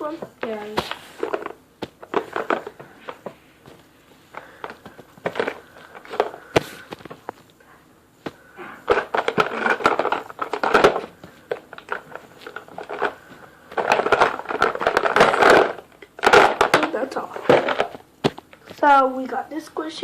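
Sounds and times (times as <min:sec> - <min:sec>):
plastic rustling and crinkling: 0:00.0 - 0:07.5, 0:08.2 - 0:19.2
plastic things clicking: 0:08.8 - 0:18.9.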